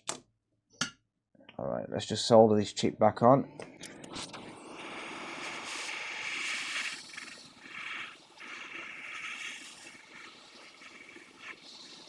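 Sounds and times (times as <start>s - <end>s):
hot air blower hissing: 4.4s - 10.2s.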